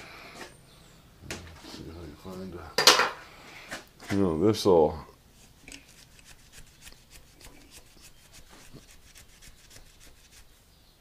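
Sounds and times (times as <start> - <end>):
scrubbing on painted metal: 5.3 - 10.6.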